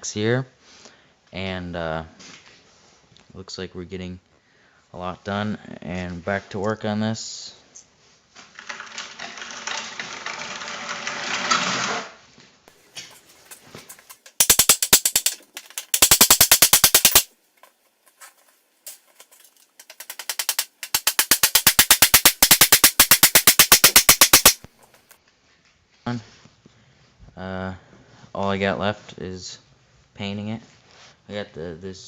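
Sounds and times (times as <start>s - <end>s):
rapid mechanical clicking: 13.9s - 17.3s, 18.9s - 24.7s.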